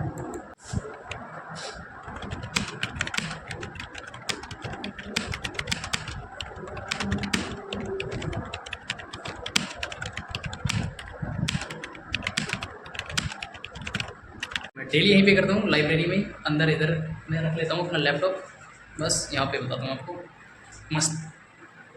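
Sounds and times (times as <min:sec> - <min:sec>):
laptop keys clicking: 0:02.0 - 0:14.8.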